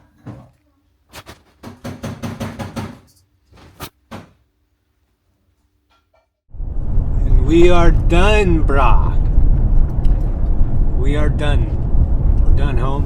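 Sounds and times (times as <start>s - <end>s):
sharp knocks and clacks: 1.6s - 3.1s.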